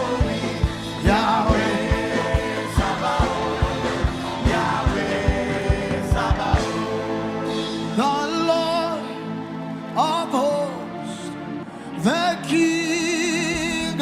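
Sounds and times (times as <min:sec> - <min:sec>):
steady low beat: 0:00.0 - 0:07.4
person singing: 0:00.0 - 0:14.0
sustained chords: 0:00.0 - 0:14.0.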